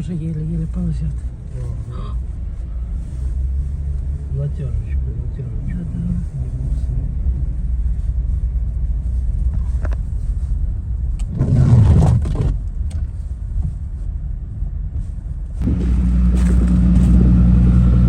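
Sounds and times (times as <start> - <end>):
car engine and tyre rumble: 0.0 - 18.0
rush of noise: 15.6 - 18.0.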